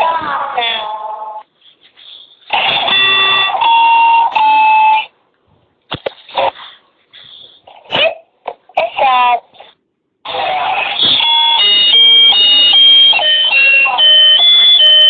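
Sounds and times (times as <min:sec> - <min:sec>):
steady electronic tones: 0:02.7 - 0:05.0.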